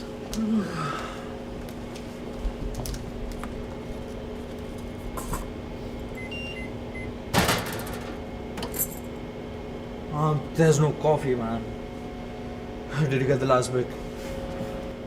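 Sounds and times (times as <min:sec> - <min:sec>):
steady electrical hum: 0:00.0 - 0:15.0
appliance button beeps: 0:06.2 - 0:07.2.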